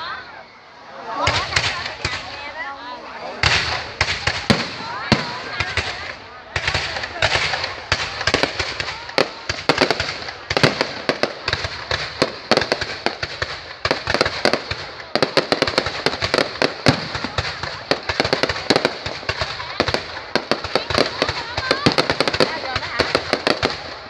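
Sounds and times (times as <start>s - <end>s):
fireworks crackling: 1.0s - 24.0s
fireworks popping and banging: 1.2s - 24.0s.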